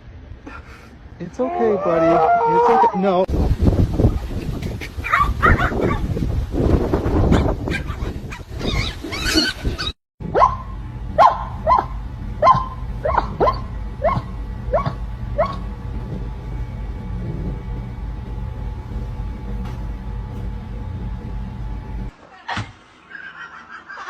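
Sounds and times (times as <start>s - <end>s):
dog barking: 5.0s - 6.0s, 7.3s - 8.1s, 10.3s - 15.6s.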